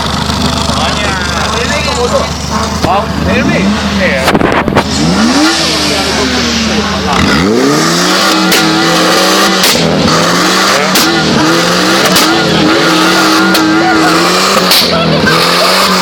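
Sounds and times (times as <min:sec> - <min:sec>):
car engine at high revs: 0:00.0 - 0:16.0
engine misfire cracks: 0:04.1 - 0:07.5, 0:09.5 - 0:13.7.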